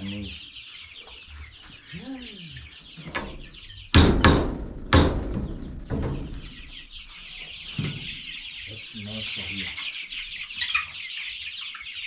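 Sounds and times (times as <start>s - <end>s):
hammer driving a nail: 4.0s - 5.2s.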